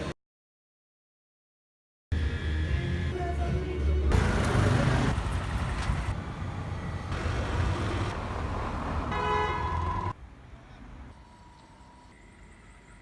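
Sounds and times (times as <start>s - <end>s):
road traffic: 2.1s - 13.0s
vehicle horn: 9.1s - 10.1s.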